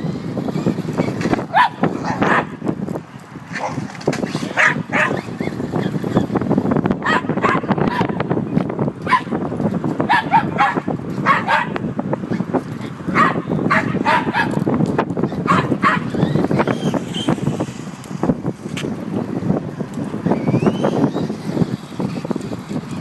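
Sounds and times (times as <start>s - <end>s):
low rumbling noise: 0.0s - 23.0s
dogs barking: 1.5s - 2.6s, 4.6s - 5.2s, 7.0s - 8.2s, 9.0s - 9.3s, 10.1s - 11.8s, 13.1s - 14.6s, 15.4s - 16.2s.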